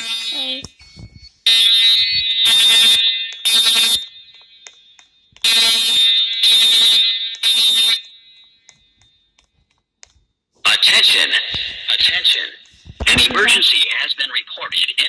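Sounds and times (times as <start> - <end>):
fire alarm tones: 0.0 - 9.4.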